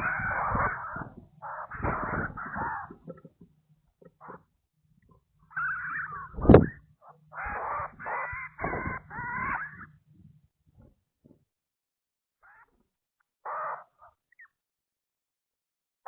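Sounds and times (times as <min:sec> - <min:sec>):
harsh drawn-out animal calls: 0:00.0 - 0:03.4, 0:04.1 - 0:04.5, 0:05.5 - 0:10.0, 0:13.4 - 0:14.2.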